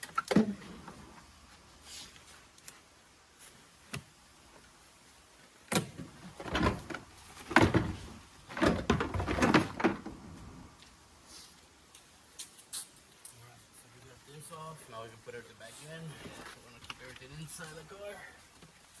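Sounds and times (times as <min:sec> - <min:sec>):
car parts knocking and rattling: 0:05.7 - 0:10.7.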